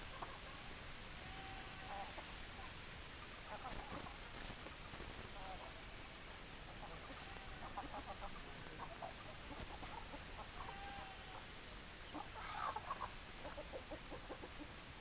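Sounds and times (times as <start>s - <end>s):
chickens clucking: 0.0s - 0.7s, 1.4s - 5.8s, 6.6s - 14.8s.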